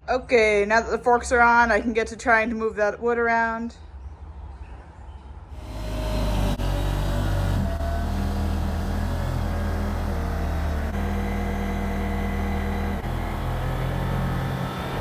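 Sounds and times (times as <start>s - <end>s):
tractor diesel engine running: 5.6s - 15.0s.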